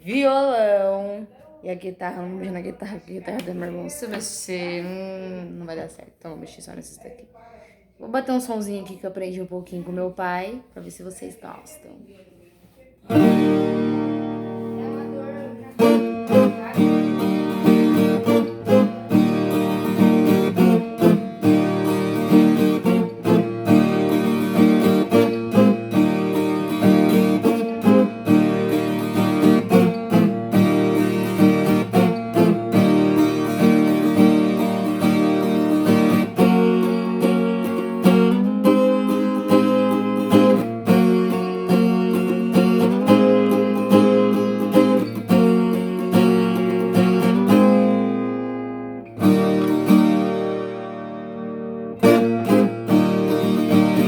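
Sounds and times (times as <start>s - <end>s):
guitar strummed chords: 13.1s - 54.0s.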